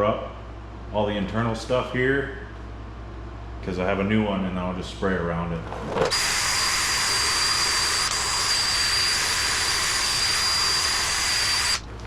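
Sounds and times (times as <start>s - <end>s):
pressurised jet hissing: 6.1s - 11.8s
thin high whistle: 6.1s - 11.8s.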